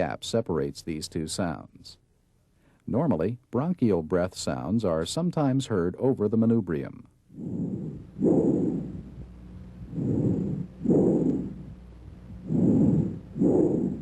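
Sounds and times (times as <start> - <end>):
breath sounds through stethoscope: 7.3 - 14.0.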